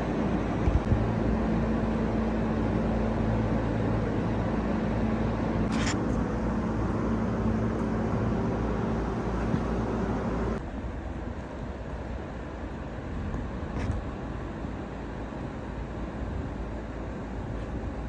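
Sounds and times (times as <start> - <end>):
heavy engine running: 0.0 - 18.0
short scrape or hiss: 5.7 - 6.2.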